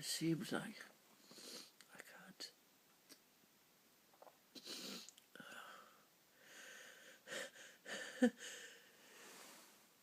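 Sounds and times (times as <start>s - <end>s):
person's wheezy inhalations: 4.6s - 9.7s.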